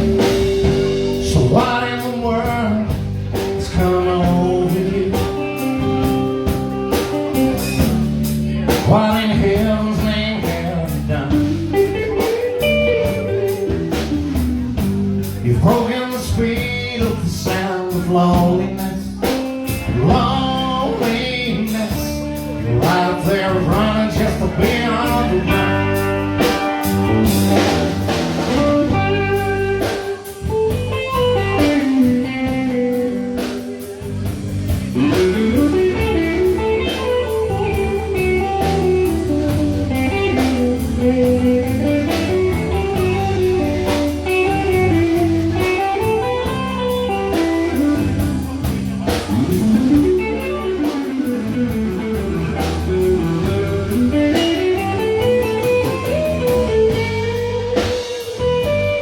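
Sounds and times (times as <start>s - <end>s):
lead guitar melody: 0.0s - 59.0s
steady drum beat: 0.0s - 59.0s
strummed rhythm guitar: 0.0s - 59.0s.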